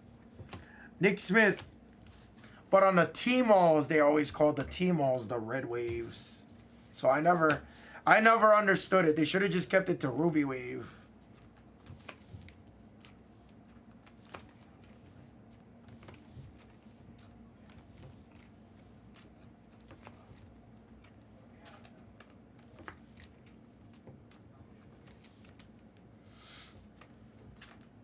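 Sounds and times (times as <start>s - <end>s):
trading cards clicking and rustling: 11.3s - 25.8s, 27.0s - 27.9s.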